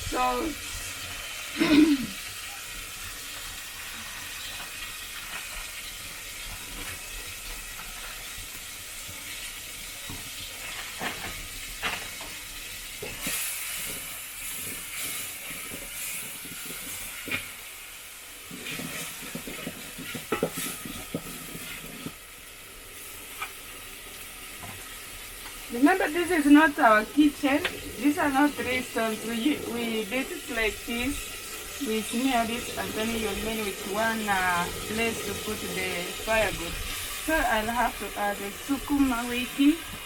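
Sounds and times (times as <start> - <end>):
tomatoes sizzling in a saucepan: 0.0 - 40.0
utensil scraping and knocking pan: 18.5 - 22.2.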